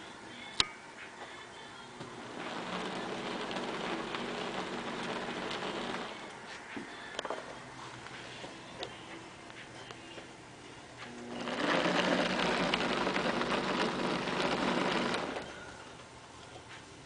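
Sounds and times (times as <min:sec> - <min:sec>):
electric motor and blower whirring: 0:01.9 - 0:07.3, 0:10.9 - 0:16.3.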